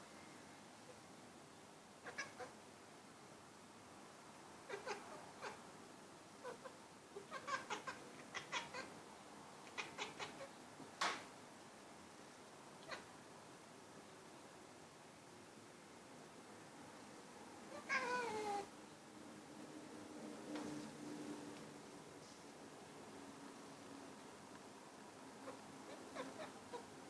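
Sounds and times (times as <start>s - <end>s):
cat chirping and chattering: 2.0s - 2.6s, 4.7s - 5.6s, 6.4s - 9.0s, 9.6s - 10.6s, 12.8s - 13.1s, 17.7s - 18.7s, 25.4s - 27.0s.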